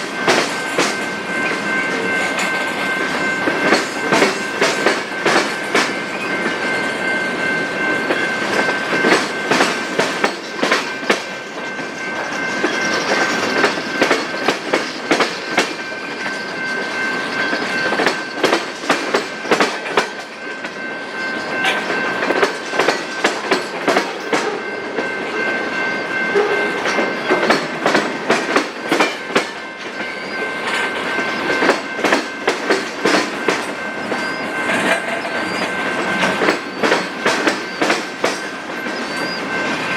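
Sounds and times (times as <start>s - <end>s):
train wheels clattering over rail joints: 0.0s - 6.6s, 8.0s - 17.0s, 17.6s - 20.8s, 21.6s - 25.1s, 26.4s - 30.1s, 30.7s - 39.8s
high-pitched ring: 15.4s - 18.6s, 19.3s - 27.6s, 29.0s - 39.9s.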